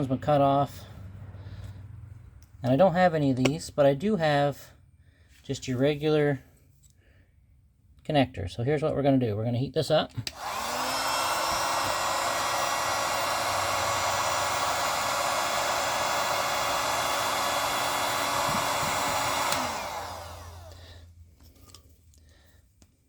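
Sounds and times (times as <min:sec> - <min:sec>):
hot-air blower whining: 0:10.2 - 0:21.1.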